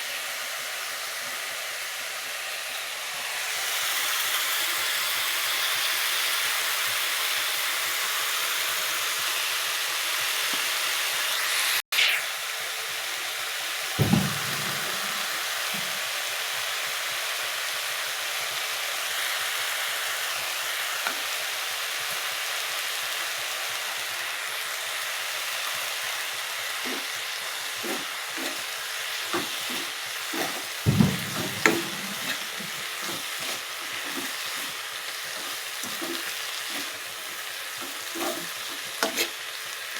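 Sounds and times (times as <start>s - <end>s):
food sizzling in hot oil: 0.0s - 39.9s
spatula scraping and knocking pan: 14.0s - 16.0s, 26.8s - 39.6s.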